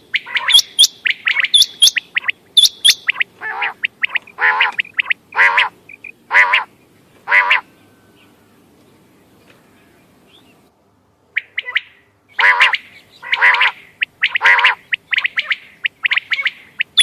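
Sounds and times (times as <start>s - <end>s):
quail chirping: 0.1s - 6.7s, 11.4s - 17.0s
quail harsh calls: 0.1s - 6.7s, 7.3s - 7.7s, 11.4s - 17.0s.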